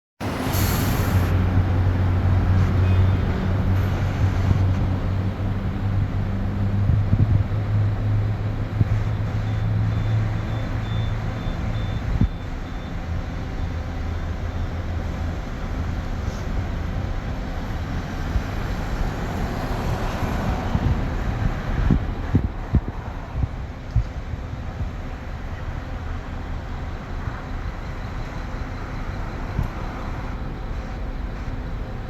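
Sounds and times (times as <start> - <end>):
engine-like rumble with hum: 0.2 - 32.0
faint high beeps: 9.4 - 13.0.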